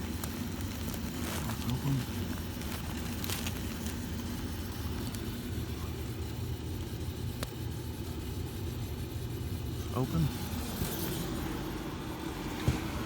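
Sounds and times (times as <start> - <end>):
air handler humming: 0.0 - 13.0.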